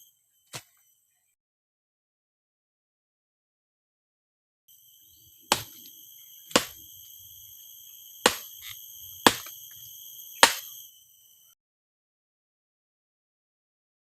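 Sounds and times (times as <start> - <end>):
jungle insects droning: 0.0 - 1.4, 4.7 - 11.6
sharp strikes: 6.5 - 6.8, 8.3 - 8.5, 9.3 - 9.5, 10.4 - 10.7.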